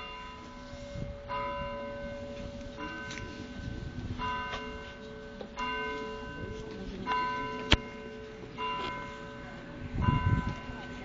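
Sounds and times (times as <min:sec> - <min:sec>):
small church bell ringing: 0:00.0 - 0:11.0.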